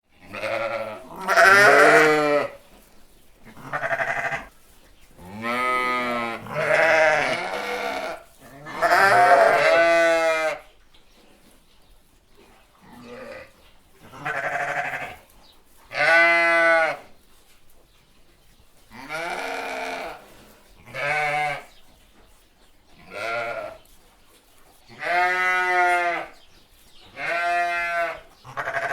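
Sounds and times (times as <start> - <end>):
sheep bleating: 0.2 - 2.6, 3.5 - 4.5, 5.2 - 10.6, 12.9 - 13.5, 14.1 - 15.2, 15.9 - 17.1, 19.0 - 20.2, 20.8 - 21.7, 23.0 - 23.8, 24.9 - 26.4, 27.2 - 28.9.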